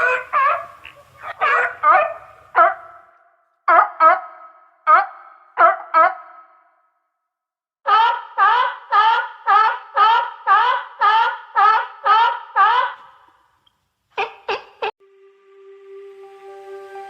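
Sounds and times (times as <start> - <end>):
animal calls sweeping up: 0.0 - 3.0.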